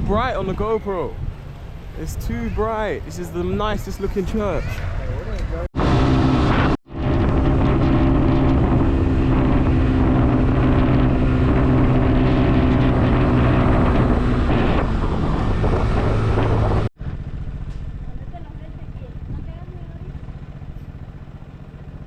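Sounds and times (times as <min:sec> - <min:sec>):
wind on microphone: 0:00.0 - 0:16.9
vehicle engine running: 0:05.7 - 0:22.0.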